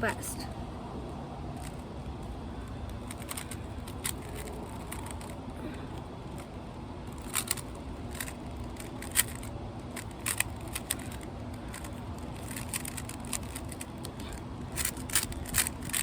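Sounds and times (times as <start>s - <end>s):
puzzle cube clicking: 2.9s - 5.4s, 7.1s - 16.0s.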